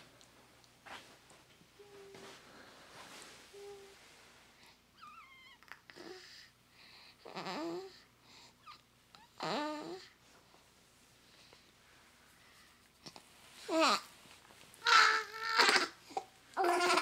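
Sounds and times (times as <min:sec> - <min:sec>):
baby squeaking and grunting: 0:14.8 - 0:16.0, 0:16.6 - 0:17.0.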